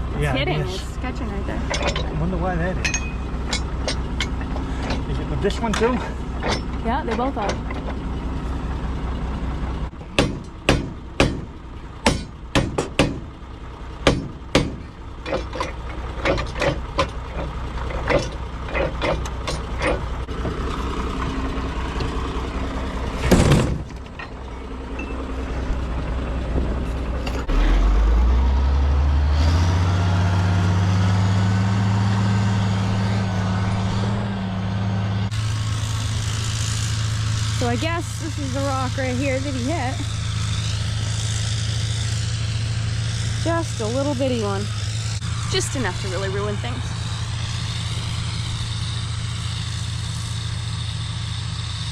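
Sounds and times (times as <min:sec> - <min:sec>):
tractor engine revving: 0:00.0 - 0:51.9
sharp metal knocks: 0:01.7 - 0:08.0, 0:10.0 - 0:13.3, 0:14.0 - 0:20.6.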